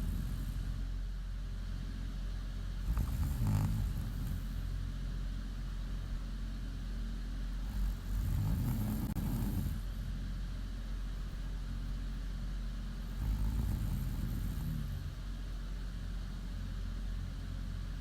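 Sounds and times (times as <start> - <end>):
woman snoring: 0.0 - 0.8, 2.8 - 4.6, 7.6 - 9.9, 13.1 - 15.2
steady low hum: 0.0 - 18.0.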